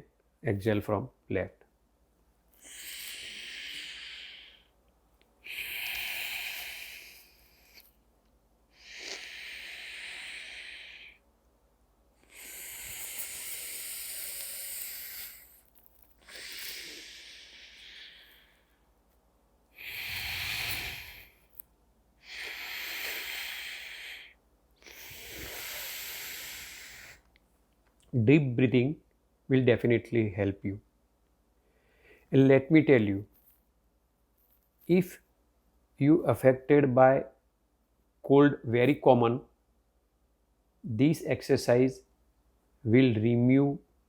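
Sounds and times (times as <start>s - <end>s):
man breathing through nose: 2.6s - 4.8s, 5.4s - 8.0s, 8.7s - 11.2s, 12.2s - 18.9s, 19.7s - 21.6s, 22.2s - 27.3s.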